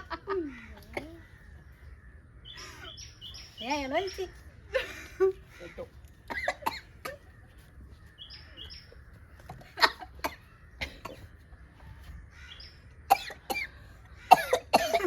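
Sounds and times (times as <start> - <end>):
bird chirping: 1.0 - 4.5, 7.0 - 14.4
people coughing and sniffing: 4.7 - 7.3, 9.6 - 11.5, 13.1 - 15.0.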